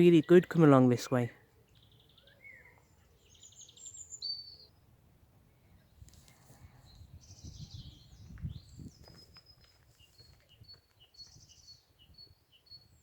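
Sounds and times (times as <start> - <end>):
songbirds trilling: 0.0 - 6.0, 6.8 - 13.0.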